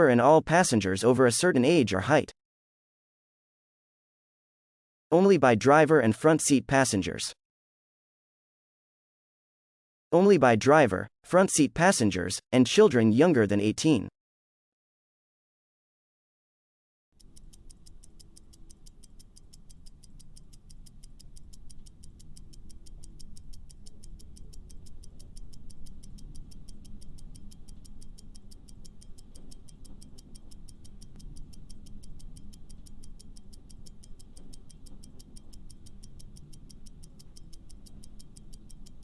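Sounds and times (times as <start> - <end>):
fast clock ticking: 17.2 - 39.0.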